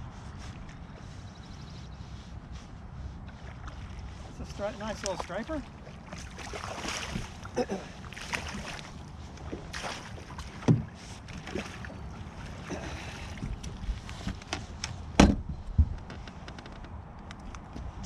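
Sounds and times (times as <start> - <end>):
wind rumbling on microphone: 8.4 - 18.0
loud thump: 15.2 - 16.0.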